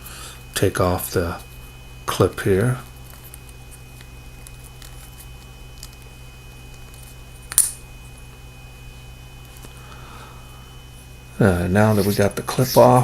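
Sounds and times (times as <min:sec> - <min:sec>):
steady background hum: 0:00.0 - 0:13.0
small ticks and scrapes: 0:02.9 - 0:07.3.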